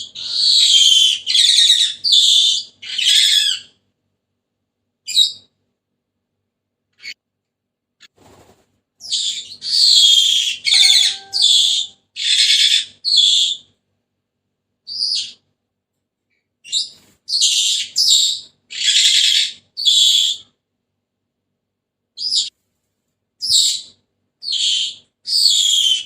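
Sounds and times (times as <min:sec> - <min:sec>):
parrot shrill harsh calls: 0:00.2 - 0:03.7, 0:09.1 - 0:13.2, 0:17.4 - 0:20.4.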